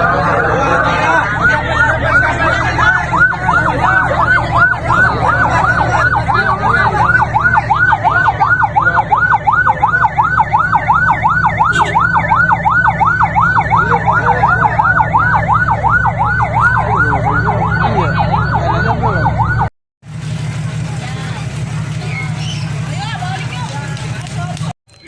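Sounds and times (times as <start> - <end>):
electronic siren yelping: 0.0 - 19.7
engine humming: 0.0 - 25.0.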